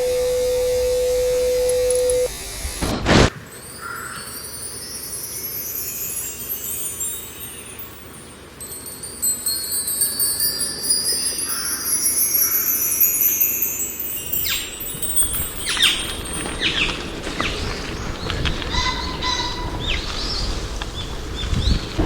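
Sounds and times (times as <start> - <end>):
sharp clicks: 0.0 - 3.3
shimmering chime-like tinkling: 3.3 - 17.7.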